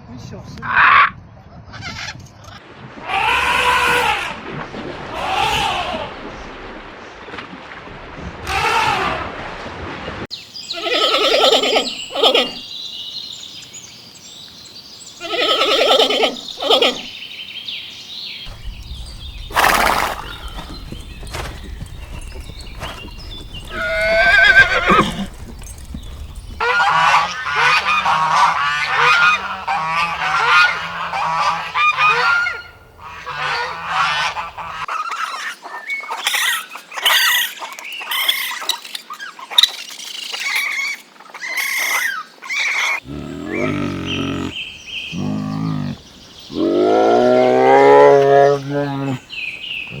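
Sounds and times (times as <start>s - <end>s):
geese honking: 26.6s - 35.0s.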